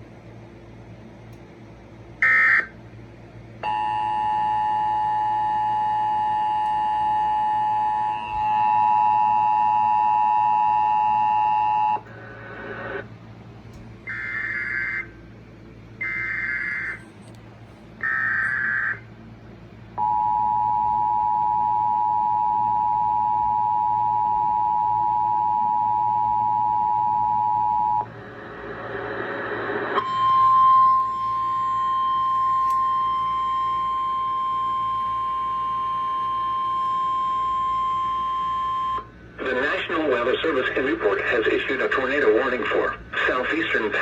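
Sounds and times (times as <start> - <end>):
two-tone attention signal: 30.0 - 39.1.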